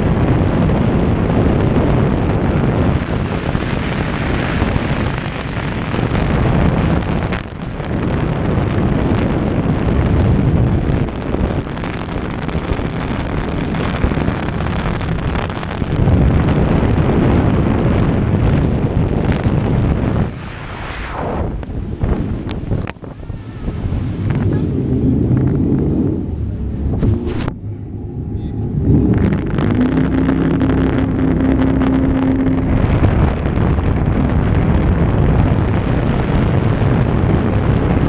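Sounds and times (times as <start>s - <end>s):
jet boat engine: 0.0s - 38.0s
wind buffeting microphone: 0.0s - 38.0s
rushing water: 0.2s - 27.5s.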